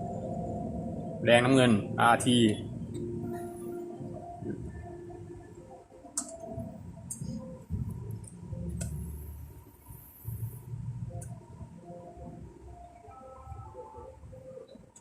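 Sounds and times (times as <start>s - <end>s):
low background rumble: 0.0s - 5.8s
test lead clips clicking: 6.2s - 6.5s.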